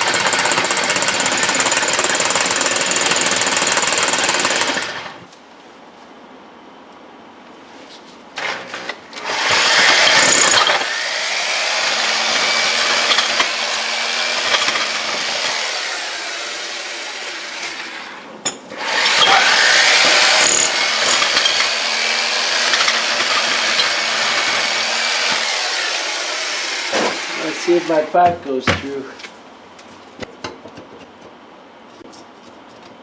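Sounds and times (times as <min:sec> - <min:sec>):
power drill boring into brick: 0:00.0 - 0:05.2, 0:08.4 - 0:27.7.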